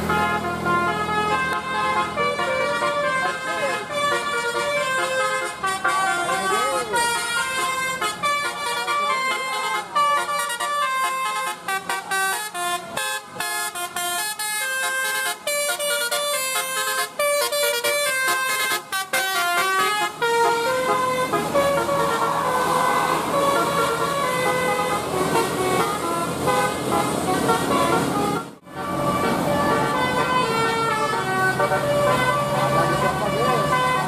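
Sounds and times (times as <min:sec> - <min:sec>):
musical vehicle horn melody: 0:00.0 - 0:34.0.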